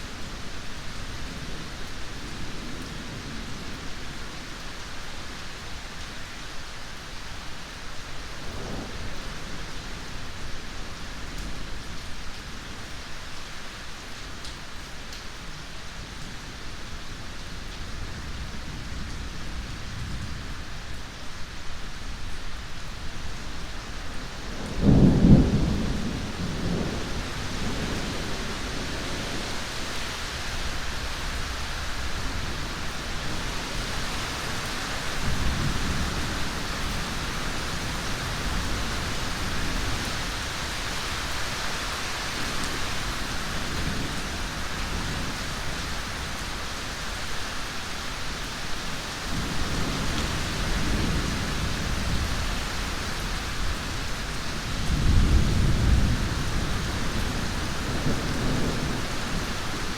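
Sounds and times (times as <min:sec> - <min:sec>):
heavy rain hissing: 0:00.0 - 0:59.9
thunder rumbling: 0:24.4 - 0:29.7, 0:54.7 - 0:59.9.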